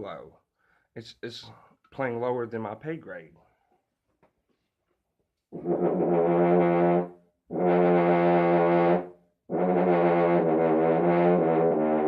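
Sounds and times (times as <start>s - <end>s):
player breathing: 0.6s - 0.9s
low brass horn notes: 5.5s - 12.0s.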